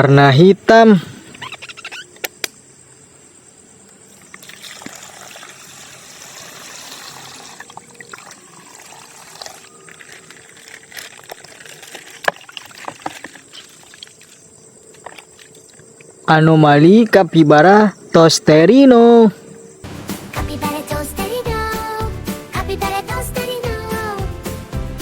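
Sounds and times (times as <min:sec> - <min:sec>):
water trickling and pouring: 0:04.3 - 0:16.1
plastic crinkling: 0:09.2 - 0:14.1.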